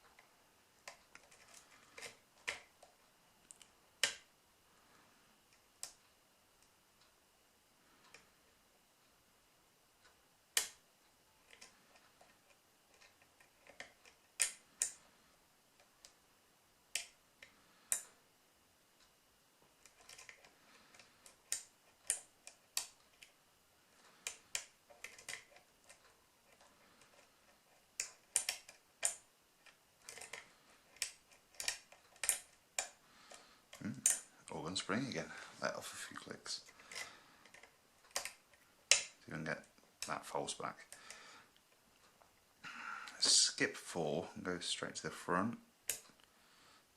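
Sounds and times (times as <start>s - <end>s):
lock pick clicking on pins: 11.4s - 15.0s, 16.9s - 18.1s, 19.8s - 23.4s, 24.1s - 34.3s, 36.7s - 39.2s
lock pick scraping: 11.5s - 15.0s, 19.8s - 23.3s, 24.1s - 34.3s
lock pick clicking in lock: 24.2s - 27.3s, 28.0s - 32.9s.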